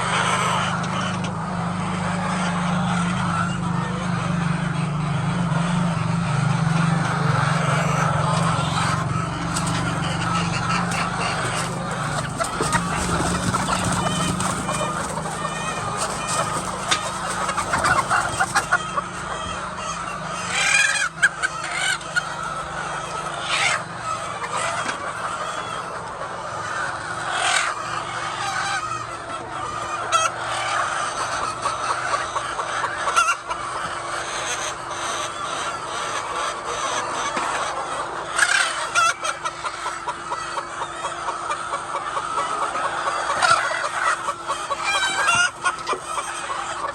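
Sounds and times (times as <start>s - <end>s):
hens clucking: 0.0s - 46.9s
hen squawks: 7.0s - 25.7s, 38.3s - 46.9s.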